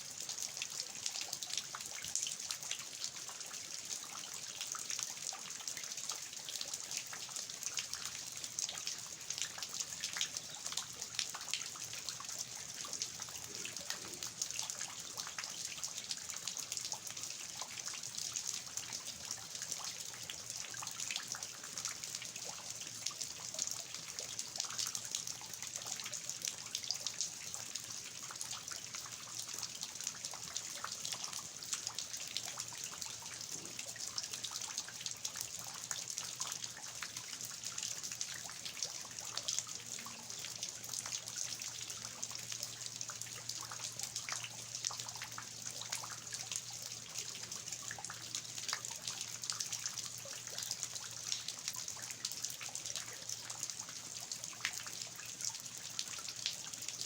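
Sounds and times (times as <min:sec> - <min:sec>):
steady rain: 0:00.1 - 0:57.0
water dripping off eaves: 0:00.1 - 0:57.0.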